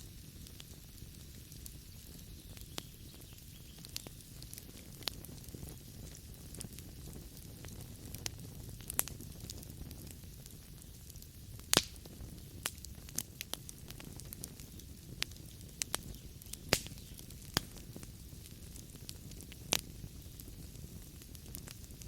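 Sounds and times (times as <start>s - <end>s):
low rumble of flames: 0.0s - 22.0s
logs snapping and popping: 11.7s - 12.0s, 15.9s - 17.8s.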